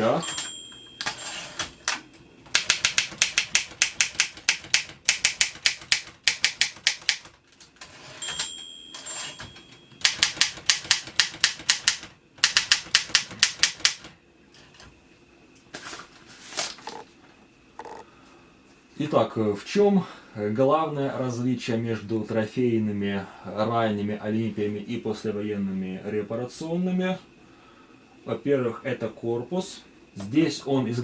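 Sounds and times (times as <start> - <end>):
typewriter margin bell ringing: 0.0 - 1.9, 8.0 - 11.0
typewriter keystrokes: 0.2 - 7.4, 8.3 - 14.1.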